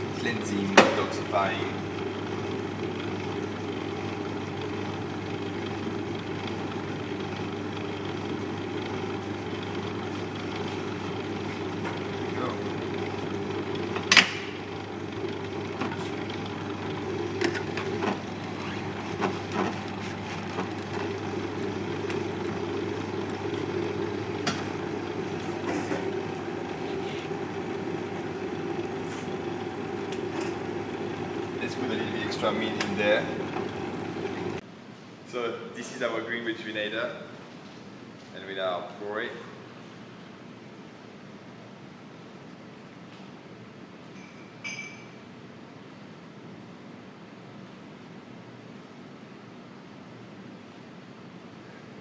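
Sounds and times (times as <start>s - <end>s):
machine humming: 0.0s - 34.6s.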